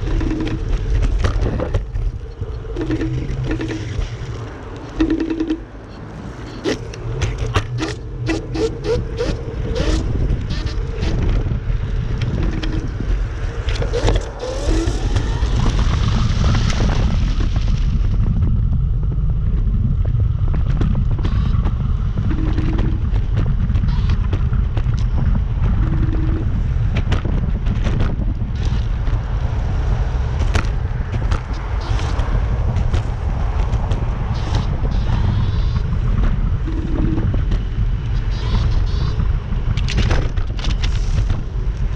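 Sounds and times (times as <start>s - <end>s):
sharp clicks and rattles: 0.0s - 17.0s, 20.5s - 29.4s, 30.4s - 41.9s
rising whine: 0.0s - 18.6s
wind and road noise rumble: 0.0s - 41.9s.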